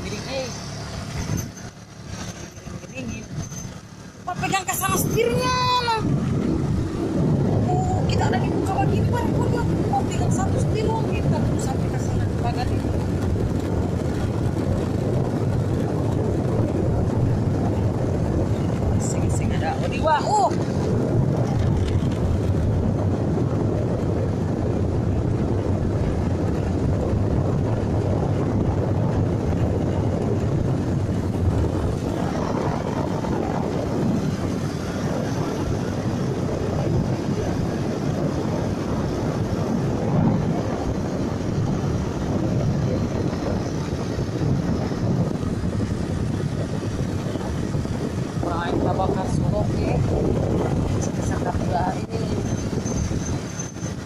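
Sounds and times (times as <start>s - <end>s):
boat engine running: 0.0s - 54.0s
wind on microphone: 0.0s - 54.0s.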